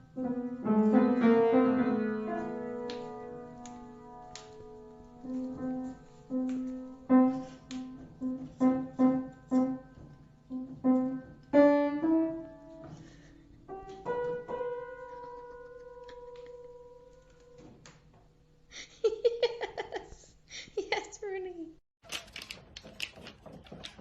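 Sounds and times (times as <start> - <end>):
piano tune: 0.0 - 18.4.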